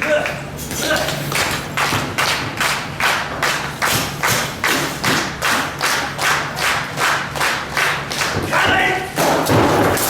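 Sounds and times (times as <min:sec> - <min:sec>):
crowd clapping in unison: 0:01.3 - 0:08.6.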